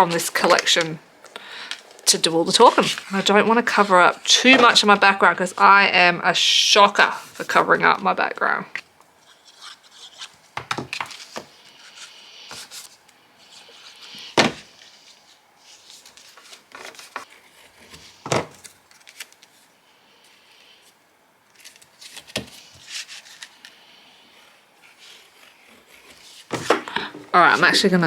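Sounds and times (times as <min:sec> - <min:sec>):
paper rubbing and scraping: 0:02.1 - 0:05.0, 0:21.6 - 0:28.0.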